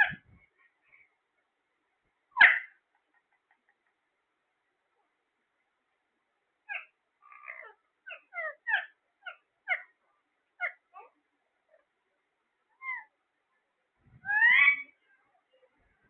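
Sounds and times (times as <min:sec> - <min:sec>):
parrot calling: 0:02.4 - 0:02.8, 0:06.7 - 0:10.0, 0:10.6 - 0:11.2, 0:12.8 - 0:13.1, 0:14.2 - 0:15.0.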